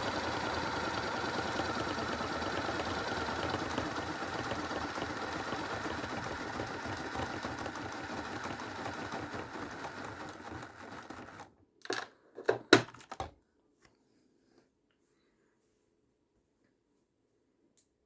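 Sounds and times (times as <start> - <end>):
machine whirring rattle: 0.0 - 11.4.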